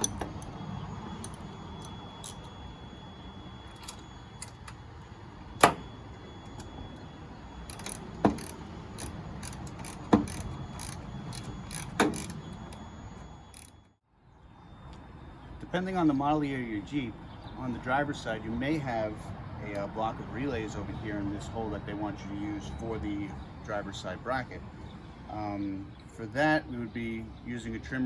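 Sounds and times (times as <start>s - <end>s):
sharp metal clanks: 5.6s - 6.0s
ratchet wrench clicking: 7.7s - 12.8s, 13.5s - 13.8s.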